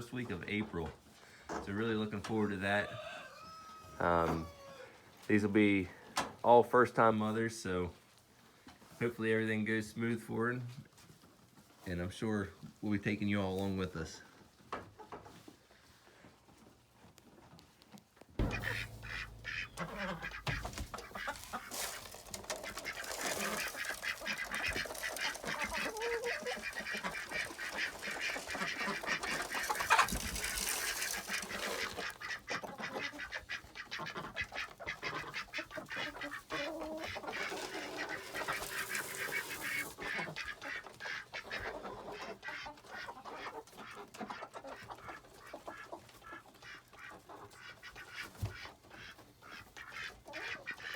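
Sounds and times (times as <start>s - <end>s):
ducks quacking: 18.4s - 50.9s.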